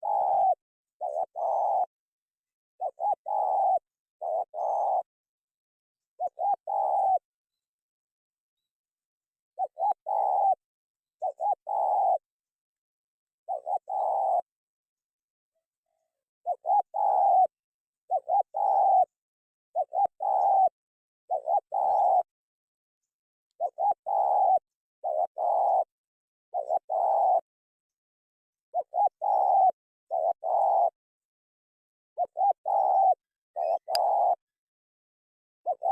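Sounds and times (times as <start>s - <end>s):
dove cooing: 0.0s - 1.9s, 2.8s - 5.1s, 6.2s - 7.3s, 9.6s - 10.6s, 11.2s - 12.3s, 13.5s - 14.5s, 16.4s - 22.3s, 23.6s - 25.9s, 26.5s - 27.5s, 28.7s - 31.0s, 32.2s - 34.5s, 35.6s - 35.9s.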